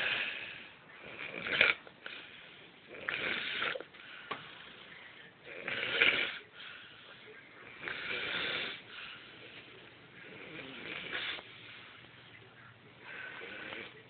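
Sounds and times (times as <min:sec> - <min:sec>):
people snoring: 0:00.0 - 0:03.9, 0:05.4 - 0:06.6, 0:07.7 - 0:09.6, 0:10.2 - 0:11.5.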